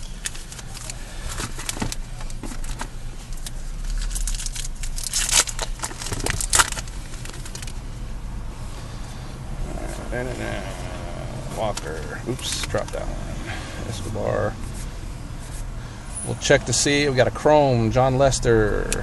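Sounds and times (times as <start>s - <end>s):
foil wrappers crinkling: 0.2s - 7.8s.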